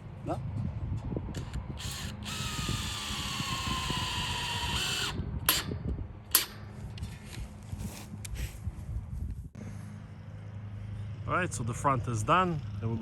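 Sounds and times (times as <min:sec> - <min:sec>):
power drill driving screw: 0:01.4 - 0:05.8.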